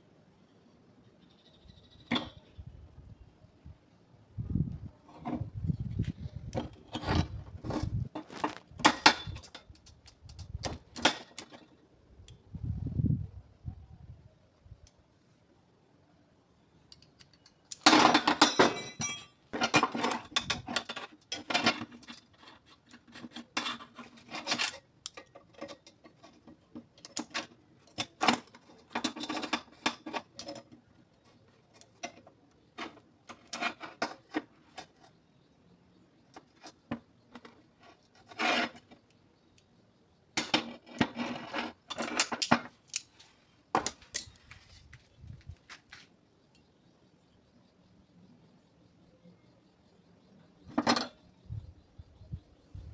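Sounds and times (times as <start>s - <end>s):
metal pliers clicking and scraping: 8.3s - 11.6s, 16.9s - 17.9s, 18.5s - 30.8s, 40.4s - 44.6s.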